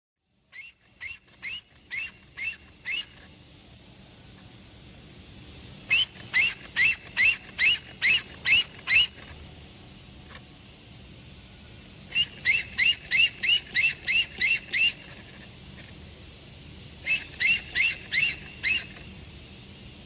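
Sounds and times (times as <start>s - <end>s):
gulls calling: 0.6s - 3.2s, 5.9s - 9.3s, 12.1s - 15.4s, 17.0s - 19.1s.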